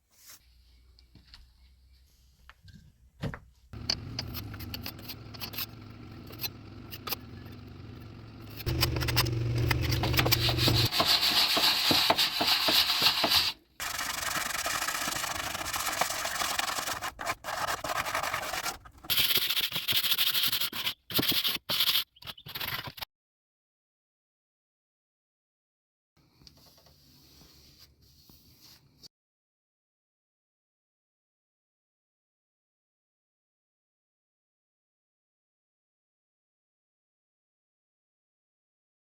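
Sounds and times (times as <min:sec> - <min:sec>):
low hum: 0:03.8 - 0:10.9
sanding wood: 0:08.5 - 0:20.6.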